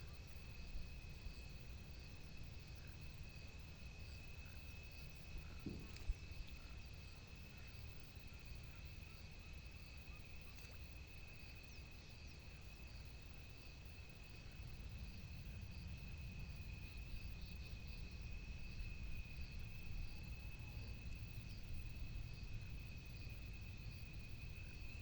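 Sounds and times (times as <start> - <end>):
low rumbling haze: 0.0 - 9.2
insects trilling: 0.0 - 25.0
short knock: 5.5 - 6.2.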